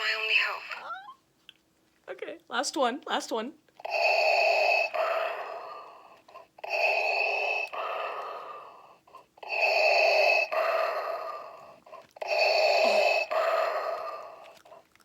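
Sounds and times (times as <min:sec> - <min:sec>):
tinny respirator breathing from toy: 0:03.8 - 0:14.8.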